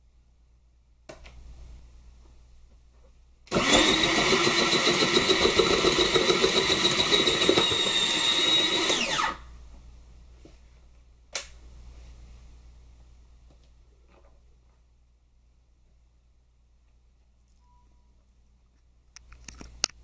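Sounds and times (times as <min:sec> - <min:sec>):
electric motor whining: 0:03.5 - 0:09.4.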